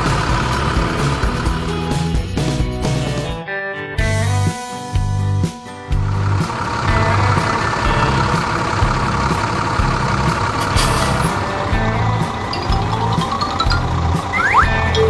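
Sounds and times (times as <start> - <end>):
tractor engine running: 0.0 - 3.3, 5.9 - 15.0
background music with bass beat: 11.1 - 15.0.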